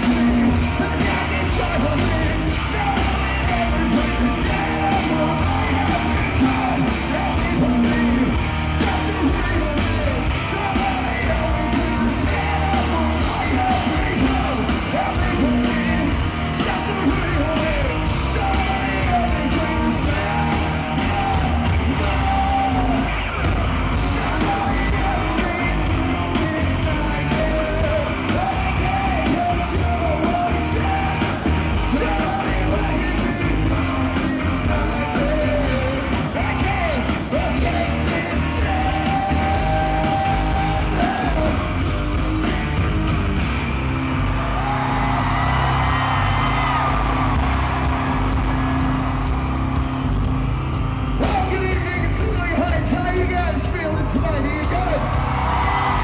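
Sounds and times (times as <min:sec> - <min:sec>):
man singing: 0:00.0 - 0:23.3, 0:24.0 - 0:42.8
live hard rock band: 0:00.0 - 0:56.0.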